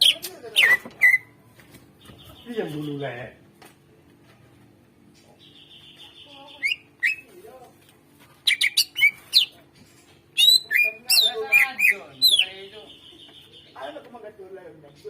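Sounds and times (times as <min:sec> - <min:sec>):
bird singing: 0:05.2 - 0:07.3, 0:08.4 - 0:09.6, 0:10.4 - 0:14.1.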